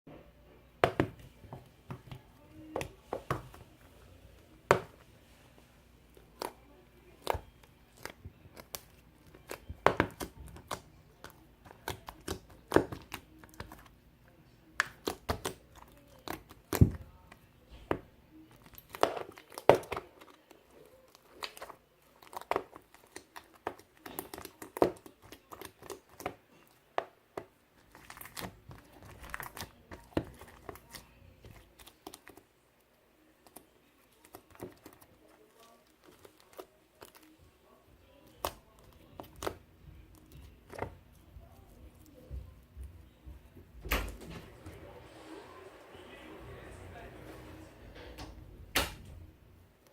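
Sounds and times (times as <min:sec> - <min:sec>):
crinkling and tearing: 0:27.8 - 0:32.5, 0:33.4 - 0:37.4.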